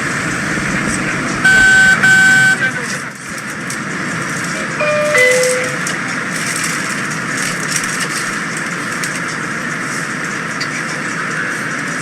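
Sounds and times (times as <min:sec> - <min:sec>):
train rumble and hiss on rails: 0:00.0 - 0:12.0
two-note falling chime: 0:04.8 - 0:05.8.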